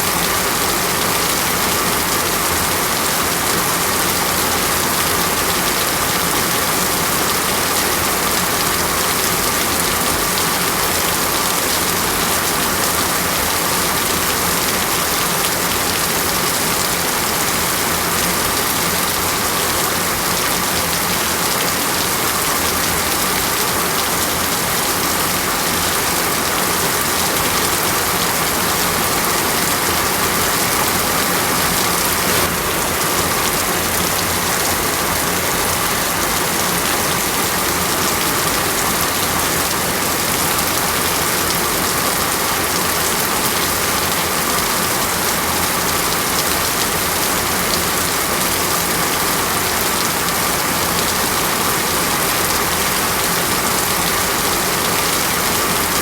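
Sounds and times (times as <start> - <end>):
heavy rain on forest canopy: 0.0 - 56.0.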